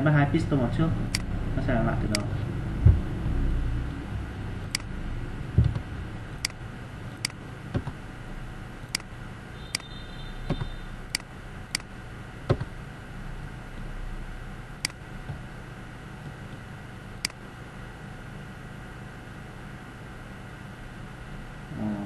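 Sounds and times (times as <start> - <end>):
steady low hum: 0.0 - 22.0
dull knocks: 2.8 - 3.1, 5.5 - 5.9.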